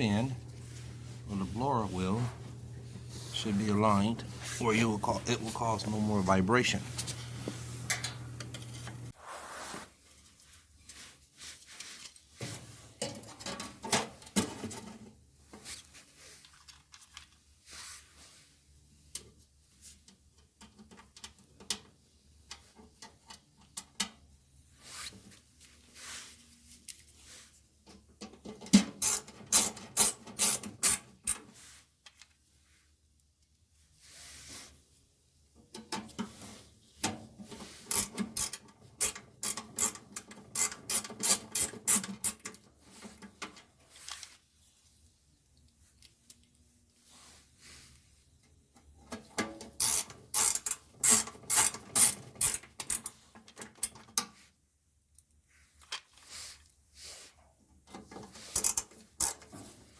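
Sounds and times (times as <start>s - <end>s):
parts and tools clicking: 37.8s - 44.3s, 49.1s - 54.3s, 57.9s - 59.6s.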